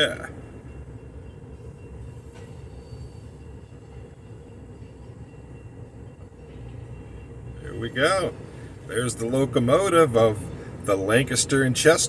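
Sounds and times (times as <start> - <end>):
train wheels rumbling on rails: 0.0 - 12.0
faint high squeal: 1.8 - 4.0.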